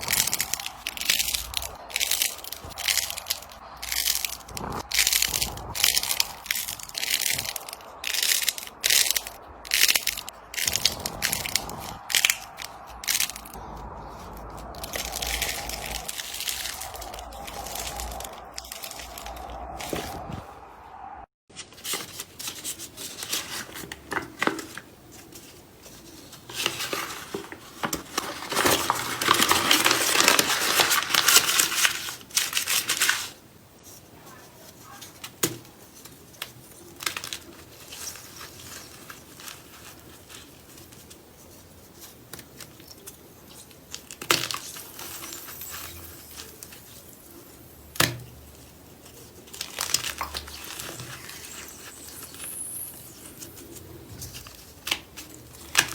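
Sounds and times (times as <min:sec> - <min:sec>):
crunchy slime crackling: 0:00.0 - 0:21.1, 0:25.9 - 0:33.4, 0:34.7 - 0:55.9.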